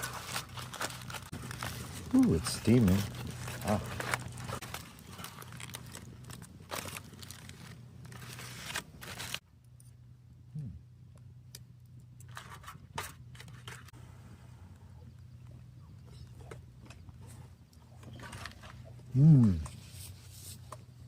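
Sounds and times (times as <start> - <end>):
foil packet crinkling: 0.0 - 9.4.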